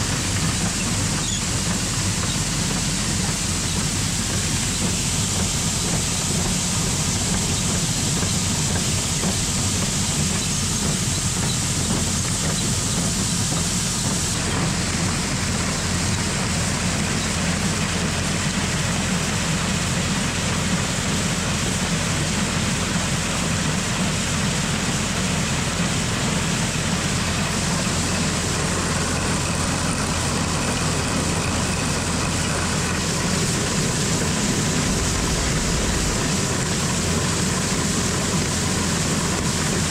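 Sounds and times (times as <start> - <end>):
farm machinery engine running: 0.0 - 39.9.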